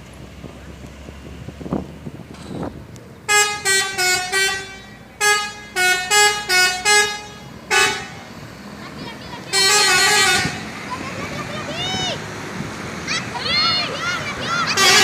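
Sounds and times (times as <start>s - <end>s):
multi-tone musical air horn: 3.3s - 8.3s, 9.5s - 10.8s, 14.7s - 15.0s
rough horn blast: 3.3s - 8.4s, 9.3s - 11.4s, 14.6s - 15.0s.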